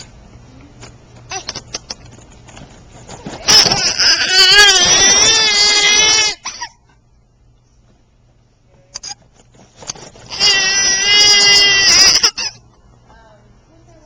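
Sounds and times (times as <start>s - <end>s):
long wavering cries: 3.5s - 6.9s, 10.3s - 12.6s.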